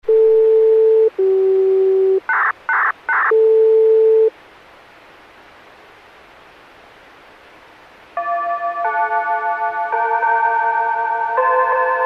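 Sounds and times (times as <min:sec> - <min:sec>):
broadcast signal tones: 0:00.0 - 0:04.3
radio hiss: 0:02.0 - 0:03.4.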